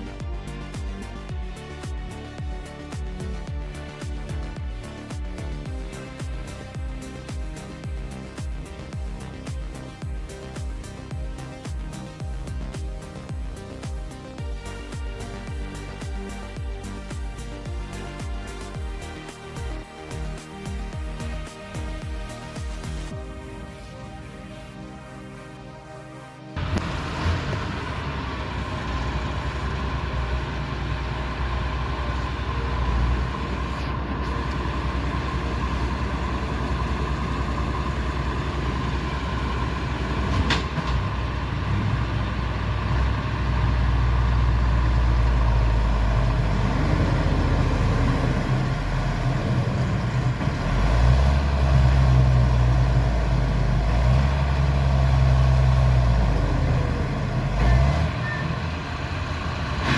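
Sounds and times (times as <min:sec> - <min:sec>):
truck diesel engine running: 0:26.6 - 0:59.9.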